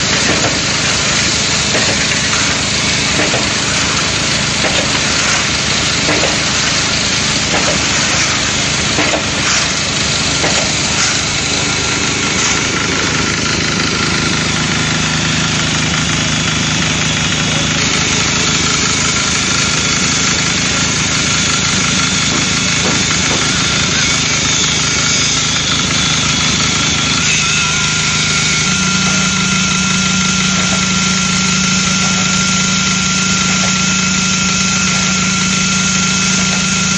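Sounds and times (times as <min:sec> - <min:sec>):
scattered knocks: 0:00.0 - 0:14.6, 0:17.4 - 0:27.4
concrete mixer drone: 0:00.0 - 0:36.9.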